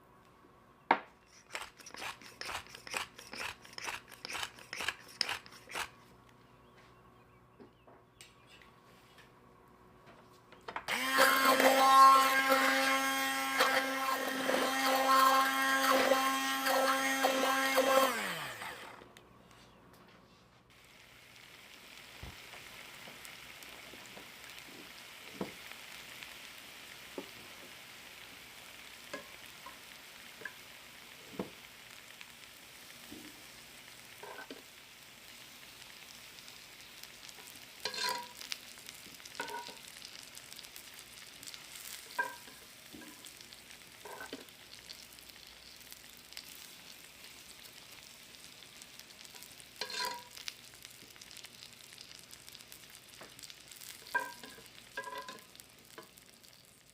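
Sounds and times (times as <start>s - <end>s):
food sizzling in oil: 1.2s - 6.0s, 10.9s - 18.9s, 20.7s - 56.9s
utensil clinking against pan: 42.1s - 42.6s, 54.1s - 55.4s.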